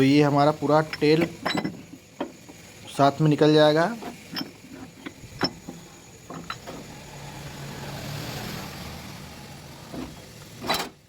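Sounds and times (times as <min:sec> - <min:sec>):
metal clinks of gearbox parts: 0:00.7 - 0:02.4, 0:04.0 - 0:06.9
low engine hum: 0:06.6 - 0:10.6.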